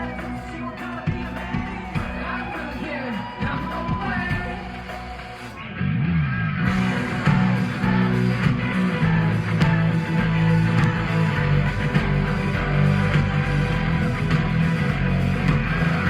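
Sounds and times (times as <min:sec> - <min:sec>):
live rock band with vocals: 0:00.0 - 0:05.8, 0:06.6 - 0:16.0
heavy low bass notes: 0:00.0 - 0:16.0
electric guitar riff: 0:04.7 - 0:16.0.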